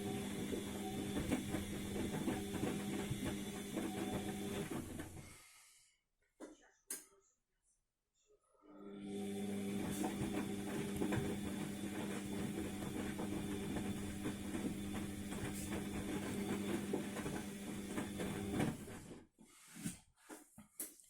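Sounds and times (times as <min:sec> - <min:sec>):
washing machine motor hum: 0:00.0 - 0:05.4, 0:08.8 - 0:19.2.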